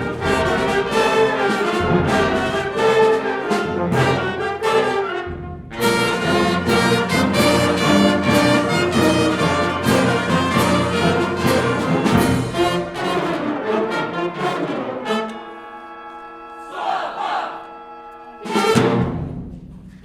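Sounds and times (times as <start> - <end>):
concert band playing: 5.7 - 13.4.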